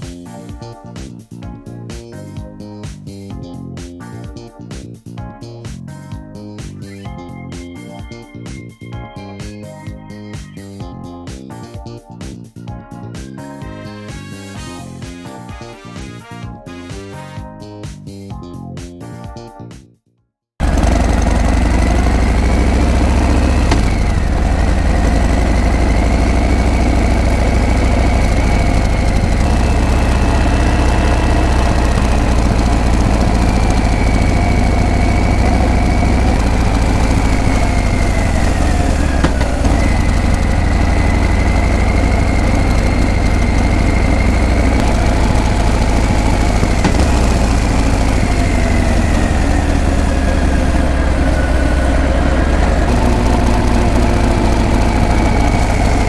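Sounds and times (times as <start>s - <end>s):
motorcycle engine rumbling: 20.6s - 56.0s.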